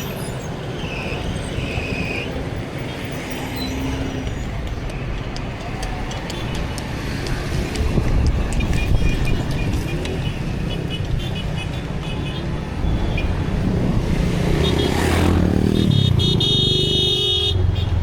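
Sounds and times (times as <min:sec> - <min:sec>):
vehicles passing: 0:00.0 - 0:18.0
car horn toots: 0:15.8 - 0:18.0.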